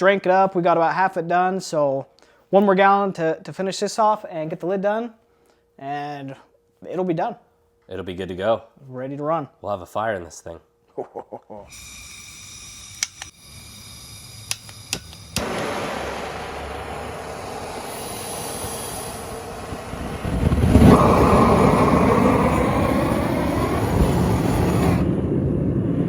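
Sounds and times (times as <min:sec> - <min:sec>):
gas hiss: 0:11.7 - 0:25.2
burner roaring: 0:11.7 - 0:26.0
igniter clicks: 0:12.5 - 0:15.8.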